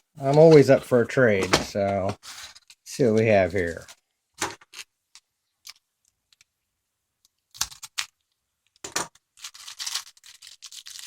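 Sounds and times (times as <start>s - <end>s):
packaging rustling and crinkling: 7.5s - 11.0s
items clicking and knocking: 7.6s - 9.2s.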